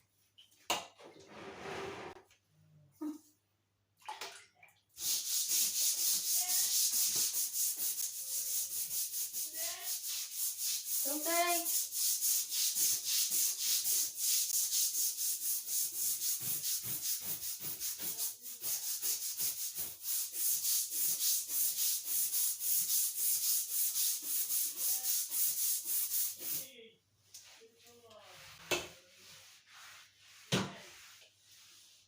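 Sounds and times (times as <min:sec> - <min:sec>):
brush scrubbing floor: 0:01.2 - 0:02.2, 0:05.0 - 0:26.8, 0:27.4 - 0:32.0.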